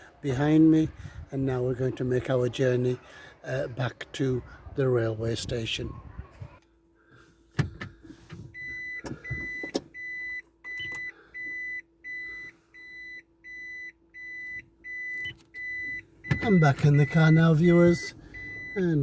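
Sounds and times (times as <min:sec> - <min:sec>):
faint steady hum: 0:05.6 - 0:19.0
car door opening and shutting: 0:07.5 - 0:11.1, 0:14.4 - 0:17.6
car warning chime beeping: 0:08.6 - 0:19.0.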